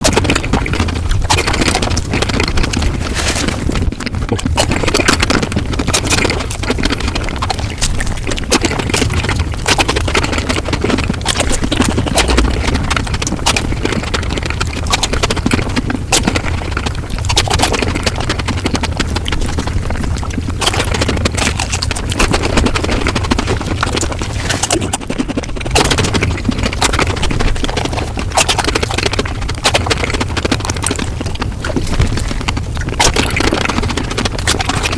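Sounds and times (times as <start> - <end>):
sped-up chewing and crunching: 0.0 - 34.9.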